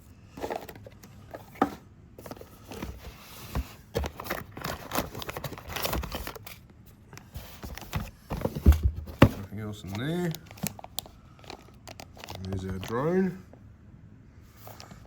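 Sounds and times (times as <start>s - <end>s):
packaging rustling and crinkling: 2.2s - 13.4s.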